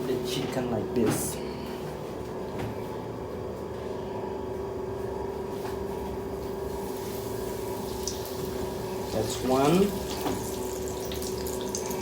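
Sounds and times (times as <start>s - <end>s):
chicken sizzling in hot oil: 6.6s - 12.0s.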